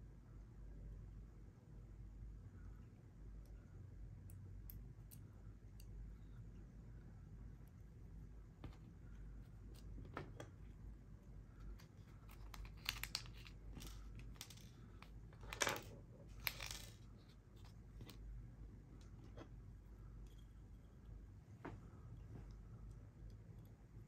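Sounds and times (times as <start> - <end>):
plastic crinkling: 12.3 - 14.4.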